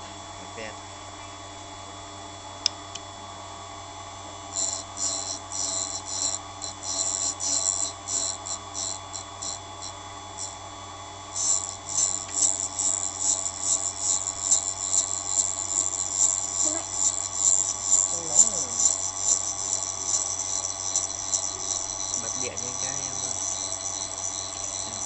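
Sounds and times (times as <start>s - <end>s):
knife-grinding machine humming: 3.7s - 25.0s
grinding wheel scraping blade: 4.5s - 10.6s, 11.3s - 25.0s.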